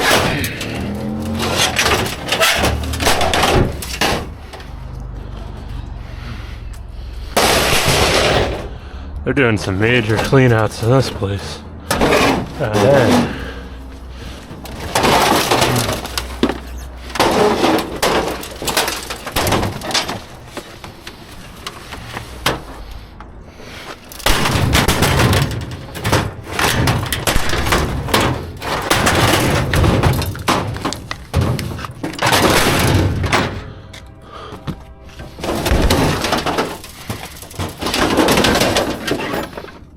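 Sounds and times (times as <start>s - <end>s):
junk clattering in a dumpster: 0.0s - 5.6s, 7.2s - 9.0s, 9.6s - 39.9s
glass breaking: 7.4s - 8.6s, 24.2s - 33.6s.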